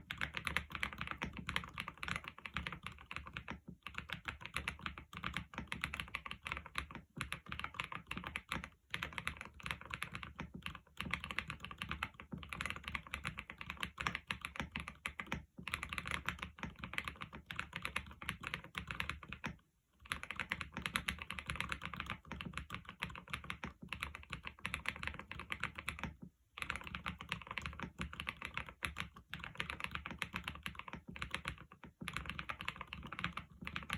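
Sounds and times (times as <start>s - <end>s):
mechanical keyboard typing: 0.0s - 33.9s.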